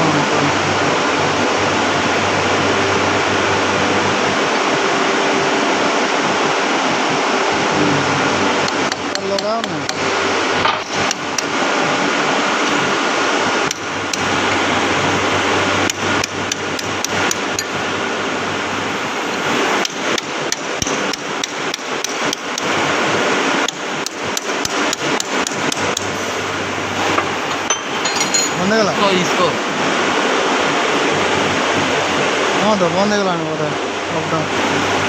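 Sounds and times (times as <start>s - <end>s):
hammer striking metal: 8.7s - 11.5s, 19.8s - 22.7s, 27.2s - 28.7s.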